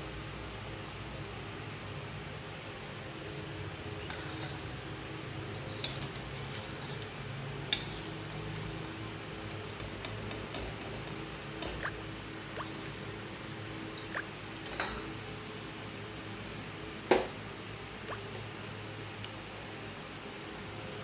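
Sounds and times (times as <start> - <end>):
utensils clinking on dishes: 14.6 - 15.1.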